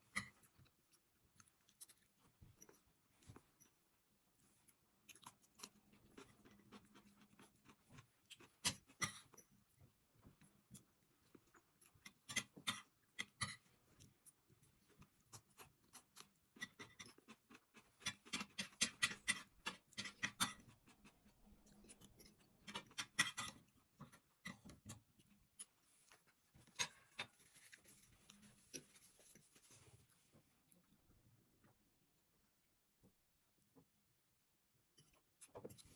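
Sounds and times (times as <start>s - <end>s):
cutlery clicking against a plate: 22.7s - 23.6s.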